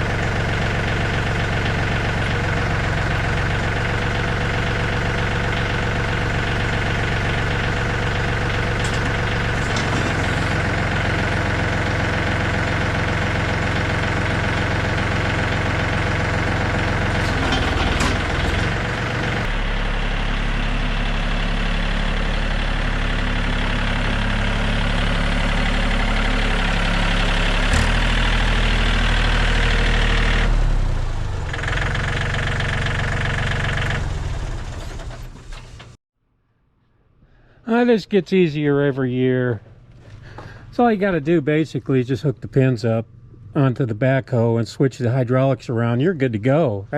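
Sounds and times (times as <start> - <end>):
tractor diesel engine running: 0.0 - 36.0.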